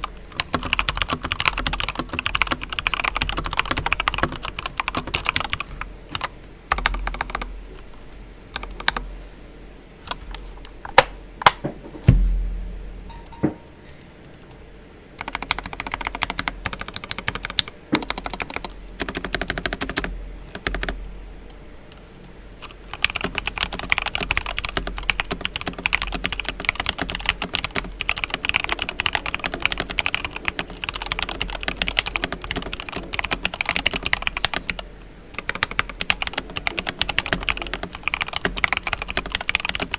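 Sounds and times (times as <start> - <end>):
mechanical keyboard typing: 0.0 - 7.5, 8.6 - 9.0, 15.2 - 21.0, 22.1 - 39.9
deep keystroke thump: 12.1 - 13.6.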